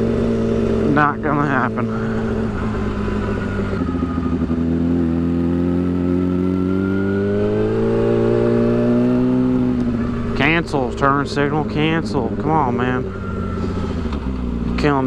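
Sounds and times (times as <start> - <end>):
motorcycle engine accelerating: 0.0 - 15.0.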